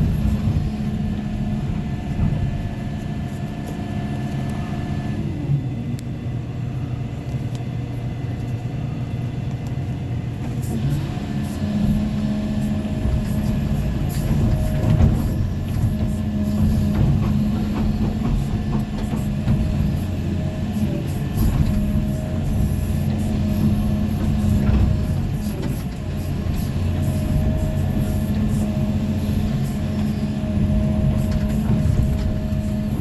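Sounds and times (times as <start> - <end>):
excavator diesel engine running: 0.0 - 33.0.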